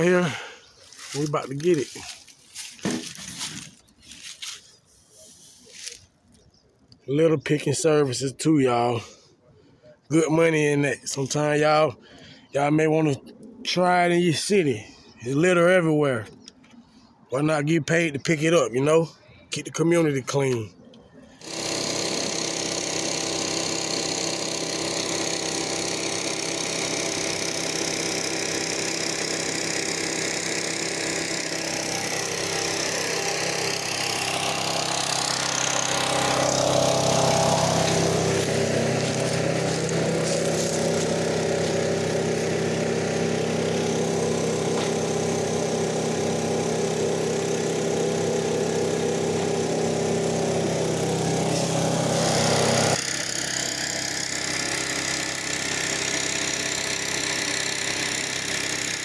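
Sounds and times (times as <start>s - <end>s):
small gasoline engine running: 0.0s - 6.1s, 21.3s - 59.0s.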